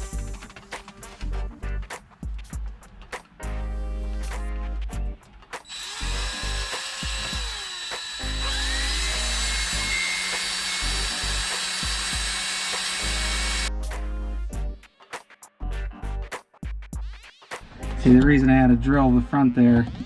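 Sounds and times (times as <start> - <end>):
power drill whining: 5.7 - 13.7.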